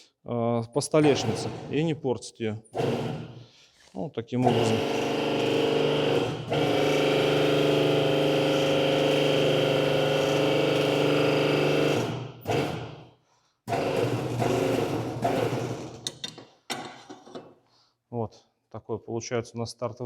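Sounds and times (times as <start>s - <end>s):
electric machine humming: 1.0s - 1.8s, 4.4s - 12.8s.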